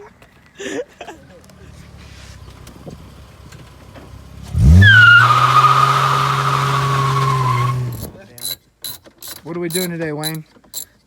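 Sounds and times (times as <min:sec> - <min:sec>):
vehicle engine accelerating hard: 0:01.4 - 0:08.2.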